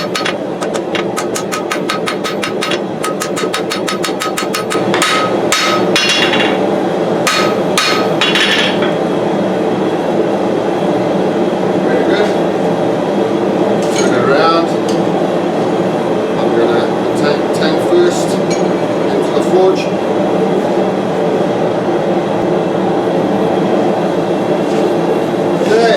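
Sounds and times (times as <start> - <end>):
hammer striking steel on anvil: 0.0 - 6.6, 7.3 - 8.9
gas forge burner roar: 0.0 - 25.9.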